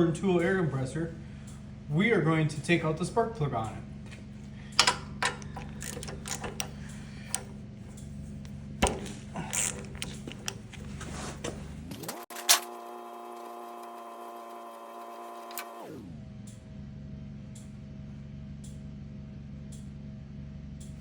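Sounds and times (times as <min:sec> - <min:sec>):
steady low hum: 0:00.0 - 0:12.2
ratchet wrench clicking: 0:04.7 - 0:11.0.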